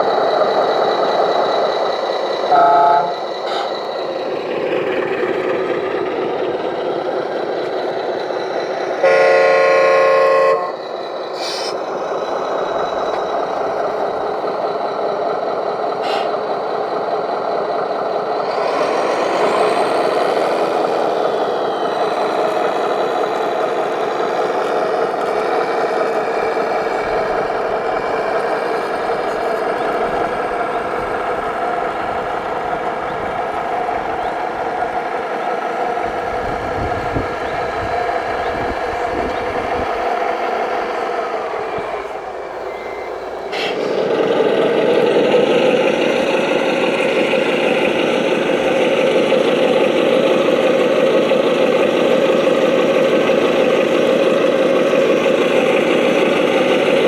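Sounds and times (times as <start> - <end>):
toy truck motor running: 0.0 - 35.0
truck horn blast: 2.5 - 3.7, 9.0 - 10.8.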